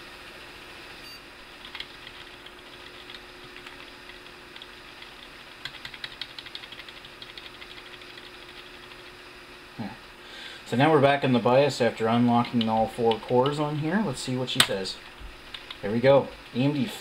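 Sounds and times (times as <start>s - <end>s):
computer hum: 0.0s - 17.0s
keyboard keys tapping: 1.6s - 8.9s.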